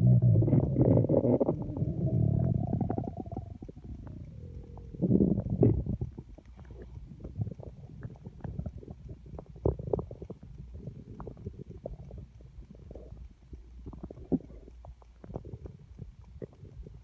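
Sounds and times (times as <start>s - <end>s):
stomach gurgling and rumbling: 0.0s - 17.0s.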